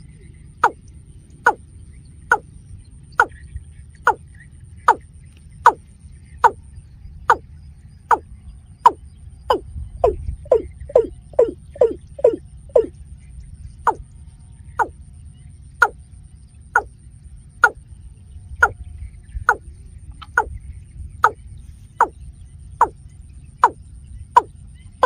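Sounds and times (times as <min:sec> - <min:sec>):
bird calling descending notes: 0:08.9 - 0:13.0.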